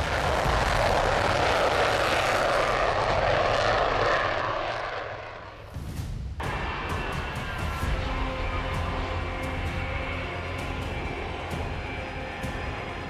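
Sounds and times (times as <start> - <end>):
airplane engine passing: 0.0 - 5.8.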